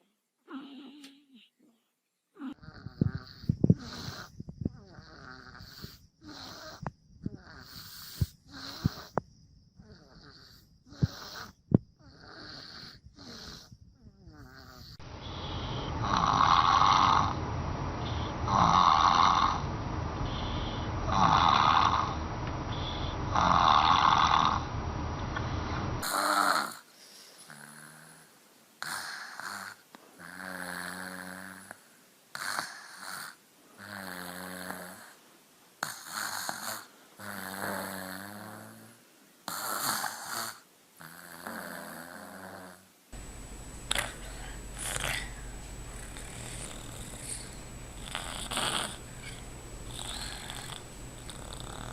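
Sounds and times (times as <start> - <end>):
pitched baby snores: 0.4 - 1.8, 2.4 - 9.2, 9.8 - 17.4, 18.0 - 19.6, 20.3 - 24.7, 26.0 - 35.2, 35.8 - 42.9, 43.8 - 51.9
baby snoring: 0.5 - 1.5, 2.4 - 9.2, 9.8 - 17.4, 18.0 - 19.7, 20.3 - 24.7, 26.0 - 35.2, 35.8 - 51.9.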